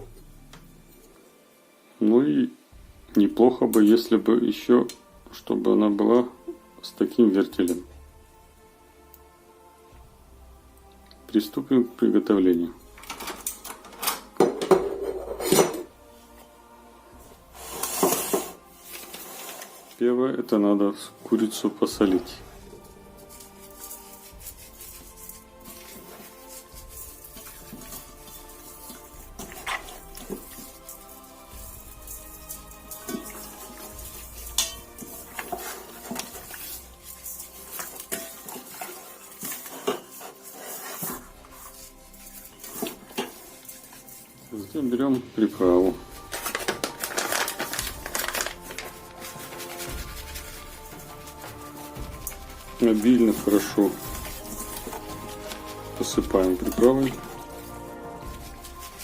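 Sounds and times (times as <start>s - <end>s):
dishes and utensils clinking: 12.9s - 16.0s, 17.6s - 20.0s, 22.1s - 44.5s, 46.2s - 59.0s
rustling shaking noise: 21.9s - 44.4s, 45.7s - 59.0s.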